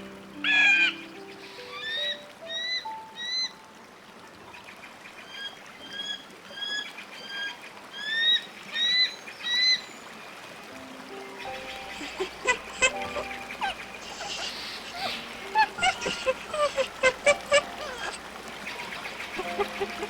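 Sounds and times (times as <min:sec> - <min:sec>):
bird calling high arched call: 0:00.4 - 0:03.6, 0:11.5 - 0:20.0.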